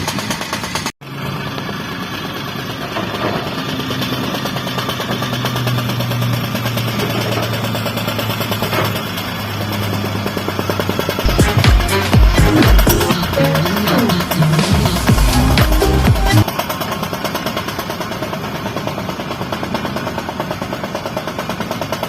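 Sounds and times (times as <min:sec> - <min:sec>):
diesel engine rattling: 0:00.0 - 0:22.0
electronic music with thumping beat: 0:11.3 - 0:16.5.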